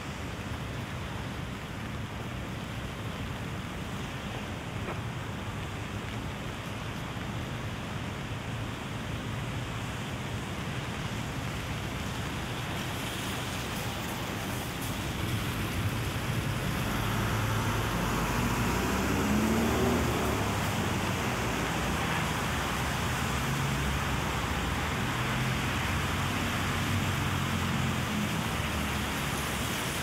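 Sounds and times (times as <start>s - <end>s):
rain hiss on street: 0.0s - 30.0s
motor vehicle approaching: 15.0s - 22.5s.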